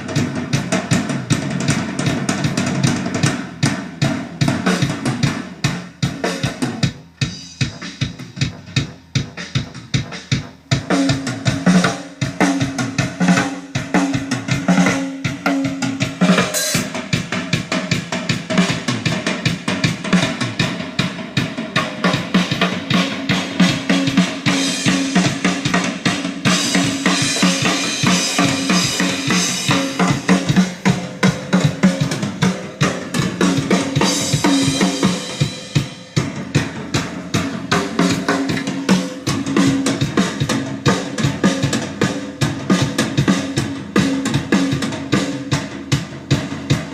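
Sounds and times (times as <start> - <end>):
kick drum and snare strokes: 0.0 - 46.9
cymbals washing: 16.3 - 17.4.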